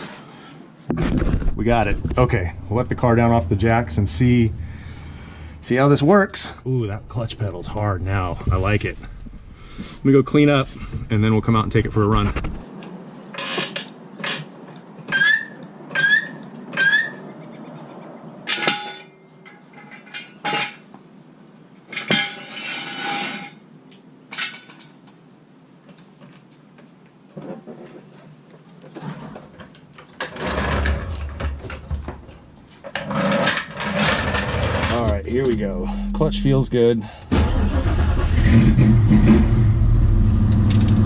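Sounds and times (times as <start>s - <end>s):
car engine starting and rumbling: 1.4s - 12.6s, 34.7s - 41.0s.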